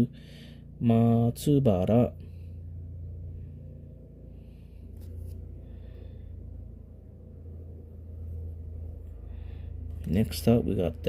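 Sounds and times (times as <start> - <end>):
low hum: 0.0 - 11.0
soft breaths: 2.2 - 10.1.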